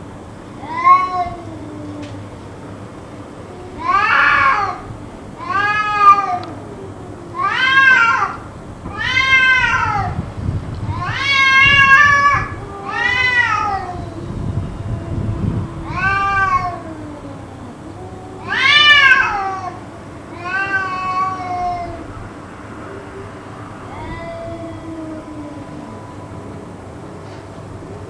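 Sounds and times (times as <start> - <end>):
cat yowling: 0.6 - 2.4, 3.3 - 22.3, 22.9 - 26.5
low drawn-out tone: 13.9 - 18.4.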